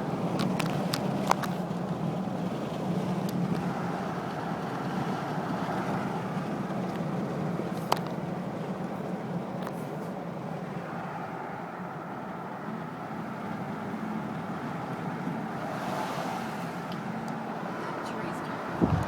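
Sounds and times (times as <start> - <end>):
car engine and road noise: 0.0 - 19.0
constant low hum: 18.8 - 19.0.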